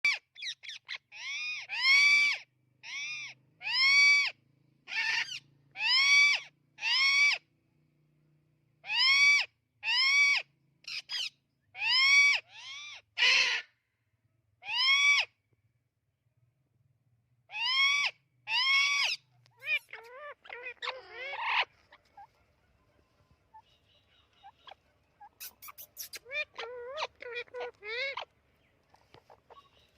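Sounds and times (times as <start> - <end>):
harsh parrot call: 0.1 - 7.4, 17.5 - 22.3, 23.5 - 28.3
parrot call notes: 23.5 - 28.3.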